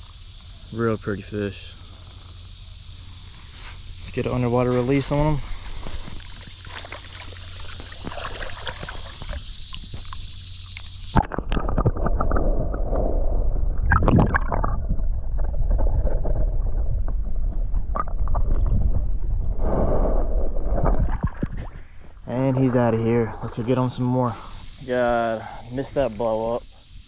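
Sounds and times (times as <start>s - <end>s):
muffled underwater rumbling: 0.0s - 26.2s
river water splashing: 2.9s - 12.1s
underwater gurgling rush: 3.9s - 21.9s.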